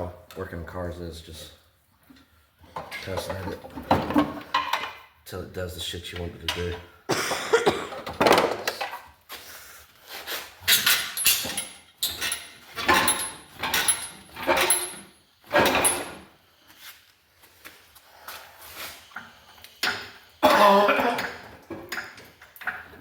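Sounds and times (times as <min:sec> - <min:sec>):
metal tools clanking and rattling: 0:02.7 - 0:05.0, 0:10.6 - 0:16.3, 0:21.1 - 0:22.9.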